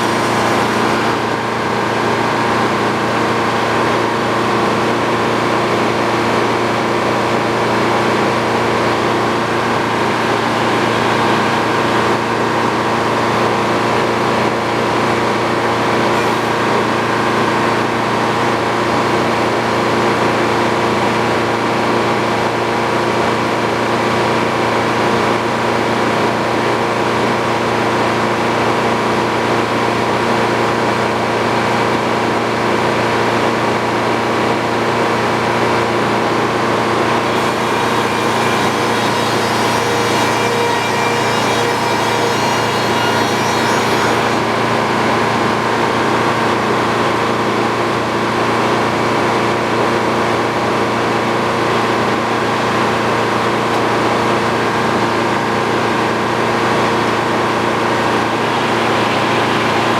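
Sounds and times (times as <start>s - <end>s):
hissing saw cut: 0.0s - 3.0s, 8.0s - 13.8s, 15.2s - 19.0s, 36.8s - 46.9s, 52.9s - 59.9s
sawmill engine running: 0.0s - 59.9s.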